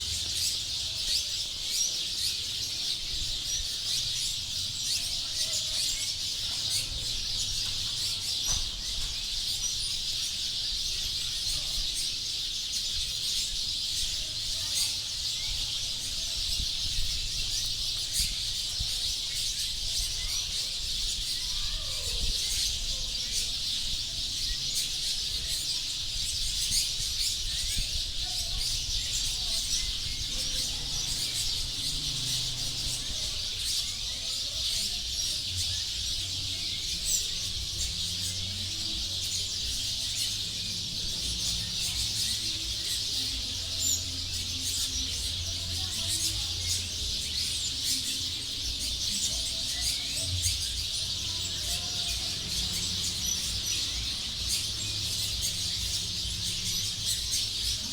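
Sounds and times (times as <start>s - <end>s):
flock of small birds chirping: 0.0s - 57.9s.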